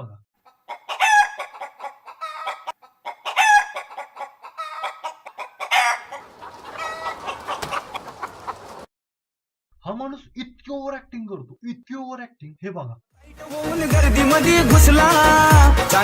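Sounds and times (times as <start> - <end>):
rooster clucking and crowing: 0.5 - 8.9.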